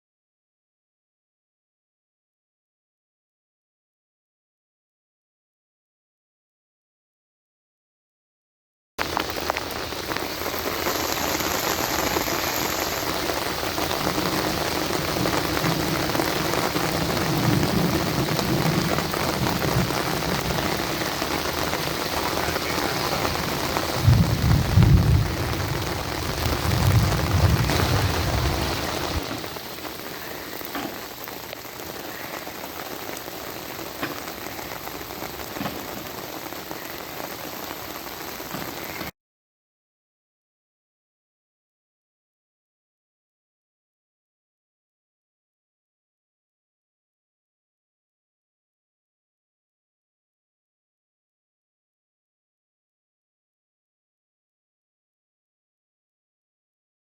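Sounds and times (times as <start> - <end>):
heavy rain: 9.0 - 39.1
deep low rumbles: 22.3 - 29.3.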